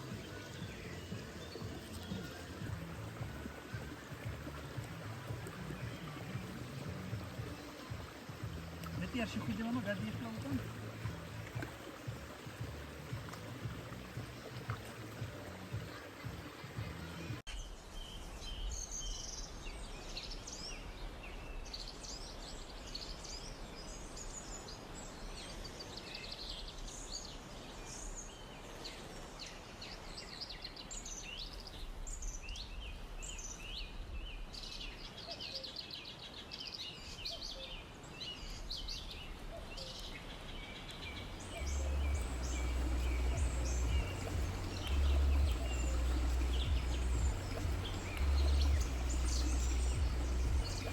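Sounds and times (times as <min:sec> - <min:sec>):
background hiss: 0:00.0 - 0:50.9
birds chirping and trilling: 0:00.0 - 0:50.9
loud low rumble: 0:41.2 - 0:50.9.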